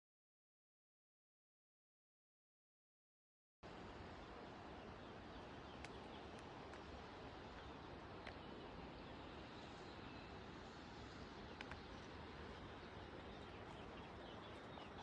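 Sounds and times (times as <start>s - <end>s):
quiet outdoor background noise: 3.6s - 15.0s.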